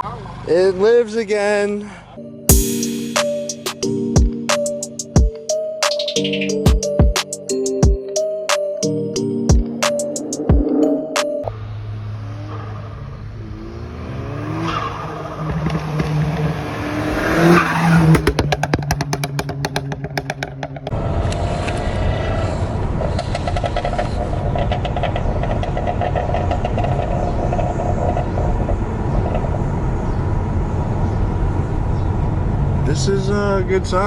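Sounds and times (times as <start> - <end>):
turbocharged engine revving: 10.2 - 25.4.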